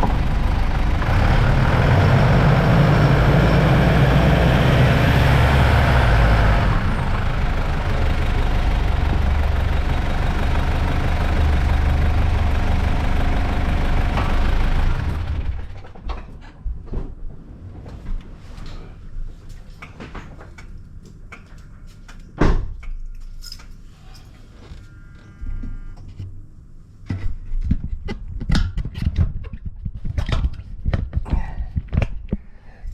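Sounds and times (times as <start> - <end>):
low road rumble: 0.0 - 16.2
suspension knocking and clunking: 0.0 - 16.4.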